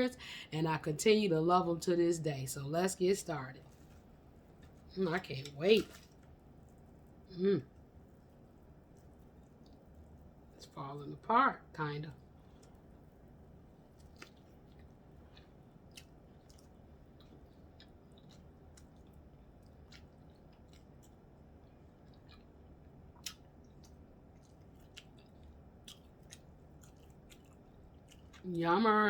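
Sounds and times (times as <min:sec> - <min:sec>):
chewing sandwich: 0:03.6 - 0:10.6, 0:12.2 - 0:28.6.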